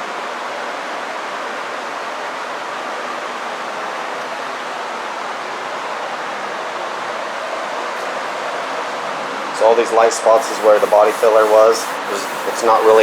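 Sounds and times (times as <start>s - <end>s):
blower rushing air: 10.4s - 13.0s.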